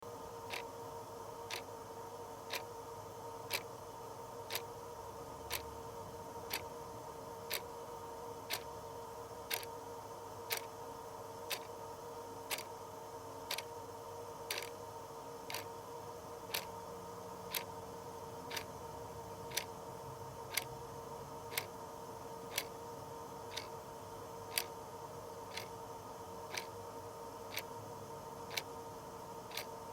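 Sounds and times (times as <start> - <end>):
faint steady hum: 0.0 - 29.9
clock ticking: 14.5 - 14.7, 15.5 - 15.7, 24.5 - 24.7, 25.5 - 25.7, 26.5 - 26.7.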